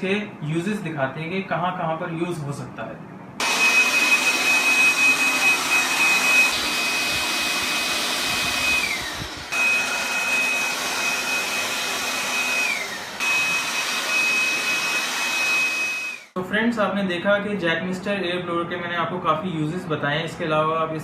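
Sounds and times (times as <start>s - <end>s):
electric air blower whine: 3.4s - 16.4s.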